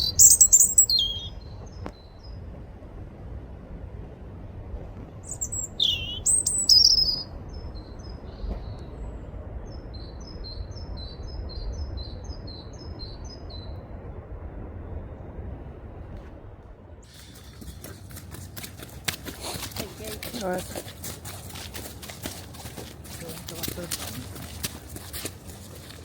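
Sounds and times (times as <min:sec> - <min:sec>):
robin singing chirps and trills: 0:00.0 - 0:02.3, 0:05.2 - 0:08.8, 0:19.4 - 0:25.0
low wind rumble: 0:00.0 - 0:26.0.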